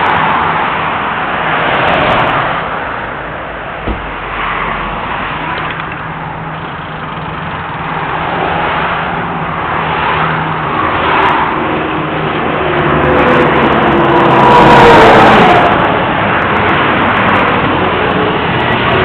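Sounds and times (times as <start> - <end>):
highway traffic rushing past: 0.0 - 19.0
dull thump: 3.8 - 4.3.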